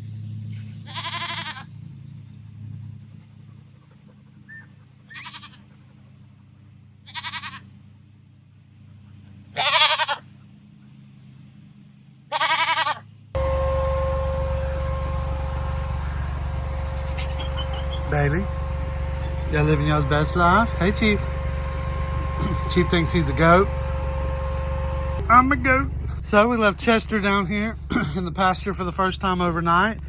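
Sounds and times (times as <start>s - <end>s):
goats bleating: 0.9s - 1.7s, 5.1s - 5.8s, 7.1s - 7.6s, 9.5s - 10.2s, 12.3s - 13.0s
steady tonal drone: 13.4s - 30.0s.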